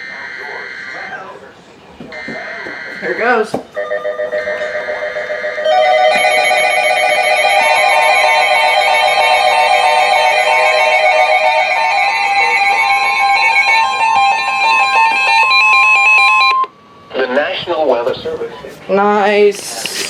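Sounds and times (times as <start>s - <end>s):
warbling electronic alert tones: 4.1s - 16.6s.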